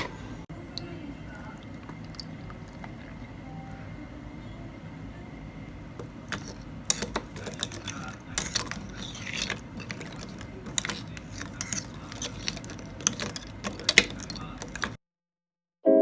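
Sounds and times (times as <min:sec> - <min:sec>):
low room hum: 0:00.0 - 0:15.0
small objects clicking and tapping: 0:01.7 - 0:03.2, 0:06.0 - 0:15.0.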